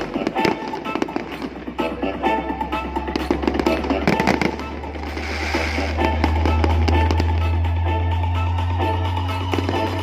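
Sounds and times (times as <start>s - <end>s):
loud music with heavy bass: 0.0s - 10.0s
firework crackles: 3.2s - 7.6s.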